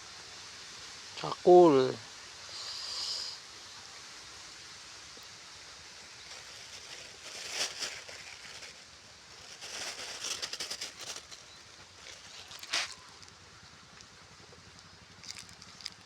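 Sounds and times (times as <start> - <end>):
steady background hiss: 0.0 - 16.0
rustling handling noise: 6.1 - 13.4, 15.2 - 16.0.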